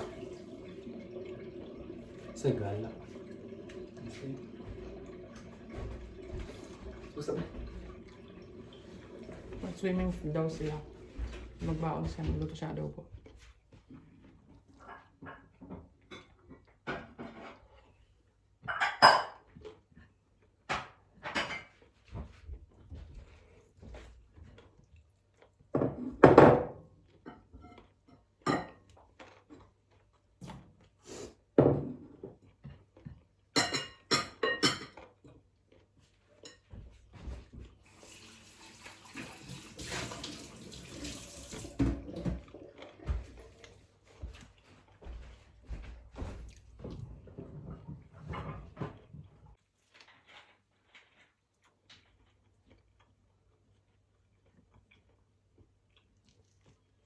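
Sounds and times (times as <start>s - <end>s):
tap water running into sink: 0.0s - 12.8s, 37.8s - 43.8s
dishes and utensils clinking: 18.6s - 19.5s, 33.6s - 35.0s.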